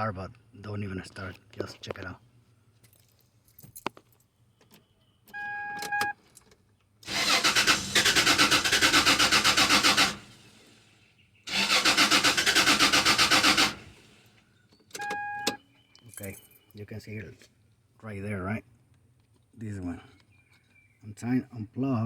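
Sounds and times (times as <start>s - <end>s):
starter cranking engine: 7.0s - 10.6s, 11.5s - 14.2s.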